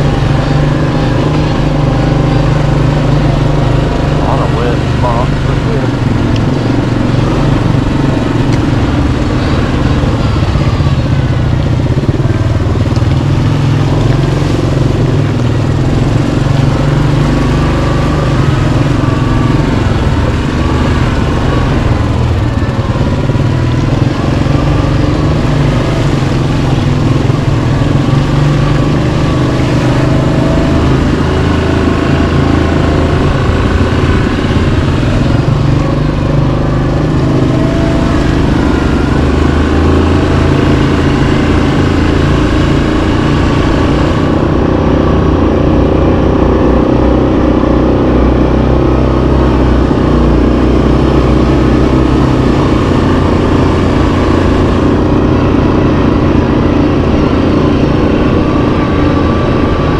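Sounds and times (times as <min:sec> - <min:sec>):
atv engine running: 0:00.0 - 0:59.9.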